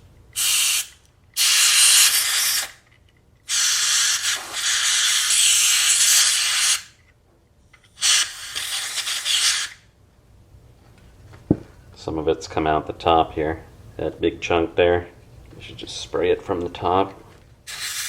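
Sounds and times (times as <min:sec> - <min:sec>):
pressurised spray hissing: 0:00.4 - 0:02.7, 0:03.5 - 0:06.9, 0:08.0 - 0:09.8, 0:17.7 - 0:18.0.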